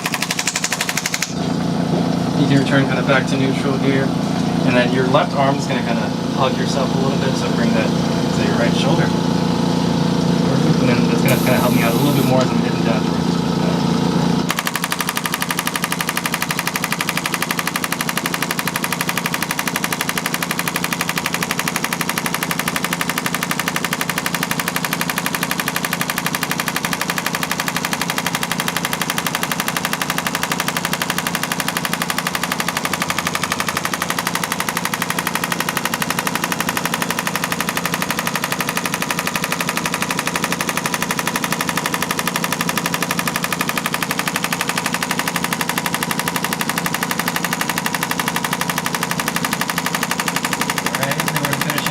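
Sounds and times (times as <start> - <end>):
rapid rattle of device pulses: 0.0 - 1.4, 14.5 - 51.9.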